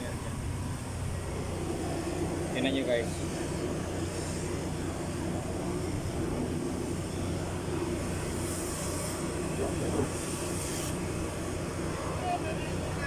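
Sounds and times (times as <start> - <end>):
low mechanical drone: 0.0 - 13.0.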